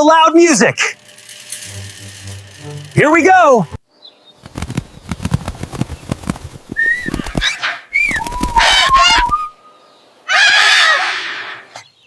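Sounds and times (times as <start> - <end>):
birds whistling and squawking: 6.7 - 12.0.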